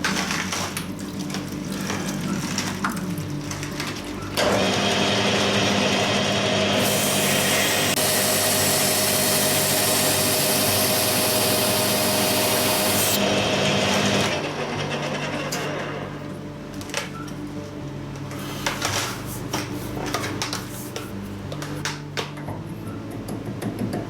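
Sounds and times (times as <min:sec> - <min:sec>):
lathe running hum: 0:04.4 - 0:16.2.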